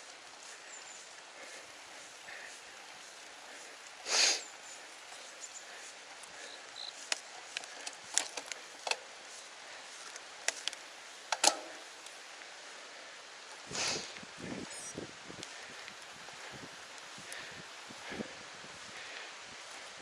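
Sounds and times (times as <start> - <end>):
bike clicks and ticks: 0.0 - 4.0, 4.6 - 12.8, 13.4 - 18.3
hard exhale: 13.7 - 14.2.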